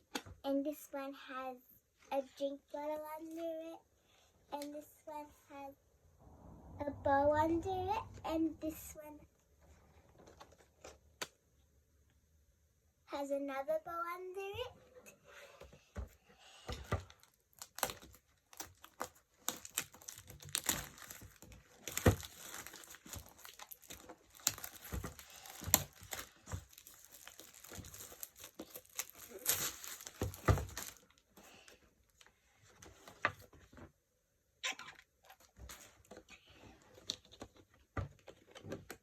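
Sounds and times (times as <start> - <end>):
toy packaging crinkling and tearing: 16.9 - 31.8.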